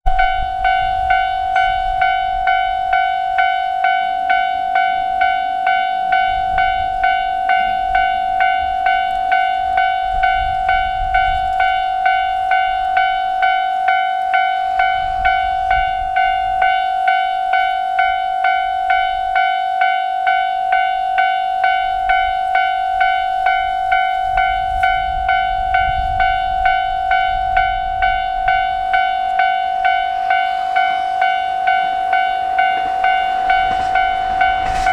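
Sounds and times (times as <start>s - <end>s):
level-crossing warning bell: 0.1s - 34.9s
low rumble: 29.8s - 34.9s.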